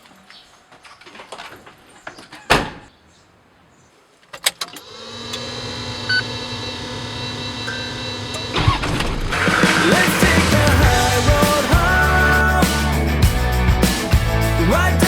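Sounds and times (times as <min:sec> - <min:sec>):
engine cranking: 0:04.4 - 0:14.9.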